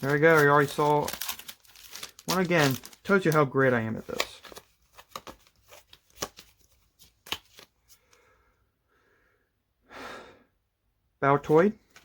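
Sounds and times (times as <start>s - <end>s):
cards sliding: 4.0s - 8.2s.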